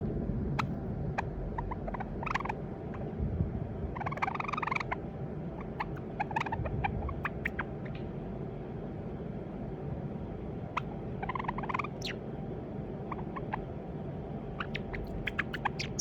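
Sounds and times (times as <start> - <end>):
steady low hum: 0.0 - 16.0
sparrow chips and warbling: 14.7 - 16.0.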